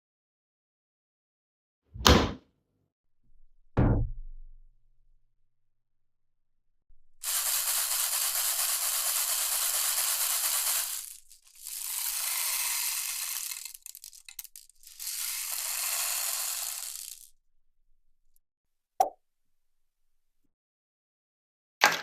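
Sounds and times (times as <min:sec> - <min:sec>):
hand rattle shaken: 0:07.2 - 0:17.3.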